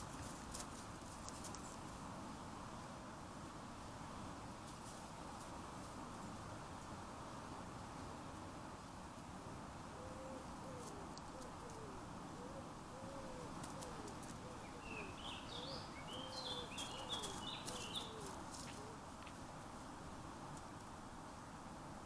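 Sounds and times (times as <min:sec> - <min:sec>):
steady outdoor hiss: 0:00.0 - 0:22.0
bird cooing: 0:10.0 - 0:19.1
small bird chirping: 0:14.7 - 0:18.3.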